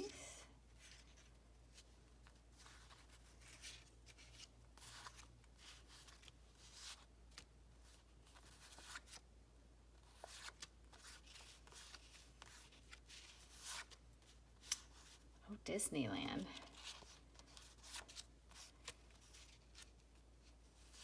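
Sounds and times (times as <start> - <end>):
low steady hum: 15.4 - 16.8
paper and packaging rustling: 16.2 - 21.0.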